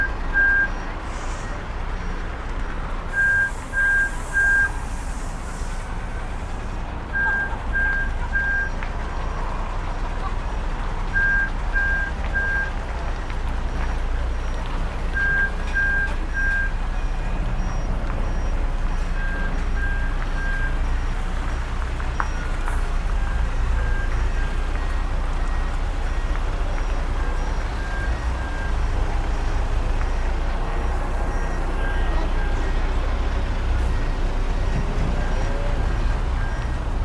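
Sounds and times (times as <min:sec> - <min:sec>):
diesel engine running: 0:00.0 - 0:37.0
reverse alarm beeping: 0:03.0 - 0:05.2, 0:15.2 - 0:36.9.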